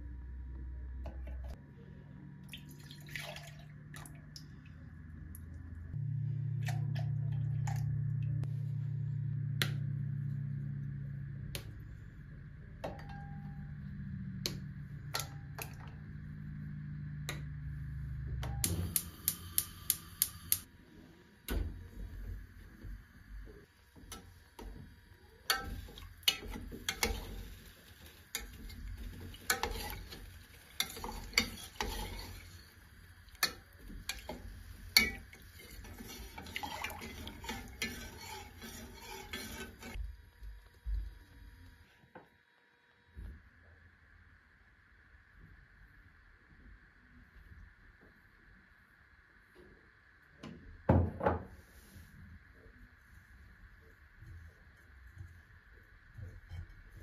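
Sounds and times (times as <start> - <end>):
low appliance hum: 0.0 - 57.0
utensil stirring in a bowl: 25.5 - 40.0.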